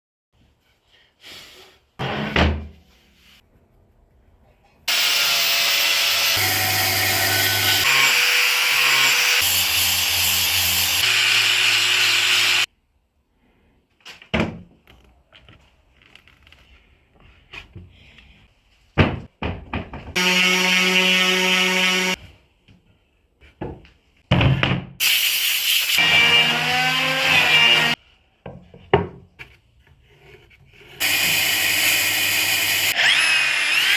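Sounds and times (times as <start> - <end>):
woodworking power tools running: 4.9 - 12.7, 20.2 - 22.2, 31.0 - 33.9.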